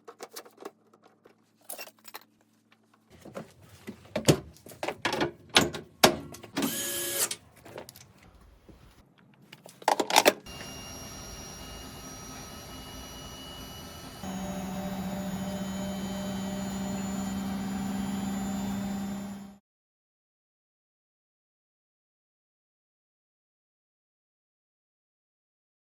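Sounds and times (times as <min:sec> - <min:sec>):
washing machine motor hum: 0:10.5 - 0:19.6.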